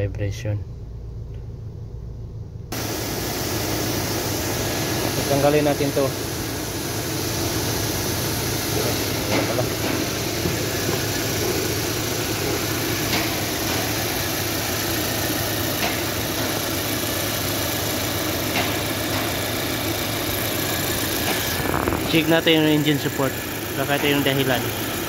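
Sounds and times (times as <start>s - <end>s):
engine idling: 0.7s - 25.0s.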